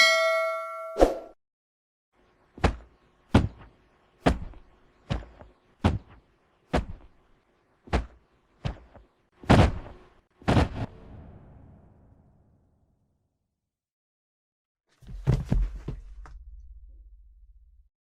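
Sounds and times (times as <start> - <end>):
heavy body-fall thuds: 7.9 - 10.9.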